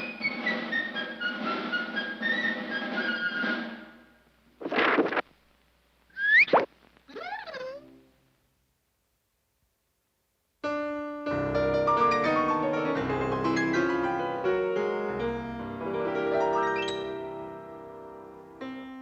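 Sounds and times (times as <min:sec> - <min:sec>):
piano music: 0:10.6 - 0:19.0.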